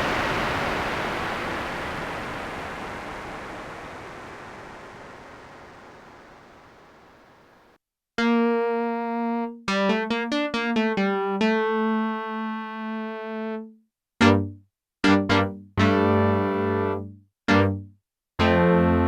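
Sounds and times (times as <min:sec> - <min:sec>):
hissing tail: 0:00.0 - 0:07.4
bright synthesizer notes: 0:14.2 - 0:17.8.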